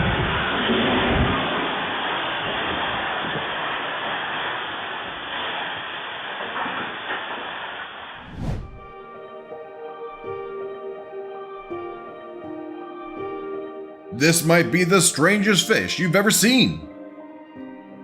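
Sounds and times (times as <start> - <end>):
strong storm wind rushing: 8.2 - 9.0.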